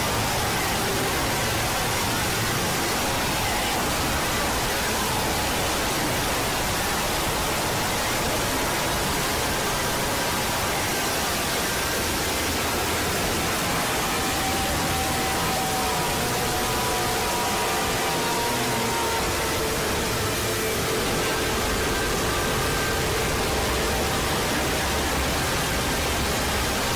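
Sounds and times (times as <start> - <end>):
loud static-like noise: 0.0 - 26.9.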